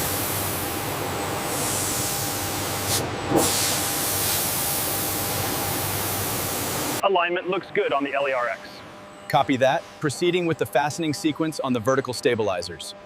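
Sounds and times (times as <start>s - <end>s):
factory machinery hissing: 0.0s - 7.0s, 8.2s - 13.0s.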